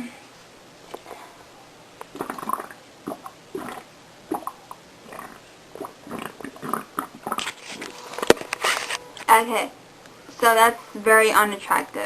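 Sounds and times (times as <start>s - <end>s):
stomach fart noises: 2.0s - 8.0s.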